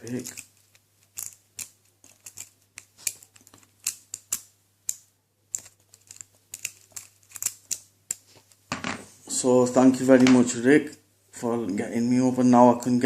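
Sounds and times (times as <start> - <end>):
lock picks clicking on padlock: 1.1 - 8.2.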